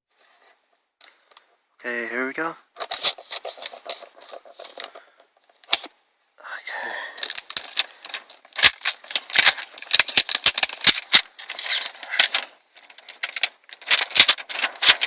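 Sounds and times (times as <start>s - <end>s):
plastic package clicks and crackles: 7.1s - 15.0s.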